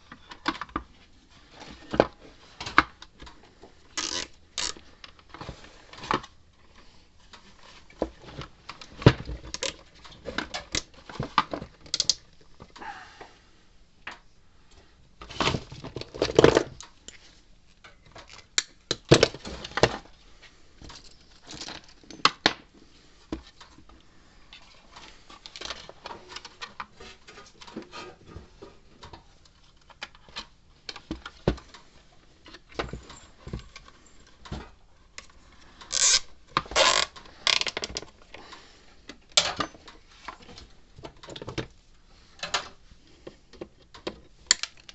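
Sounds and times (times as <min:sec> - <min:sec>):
tools clicking and scraping: 0:03.9 - 0:06.2, 0:31.6 - 0:38.6.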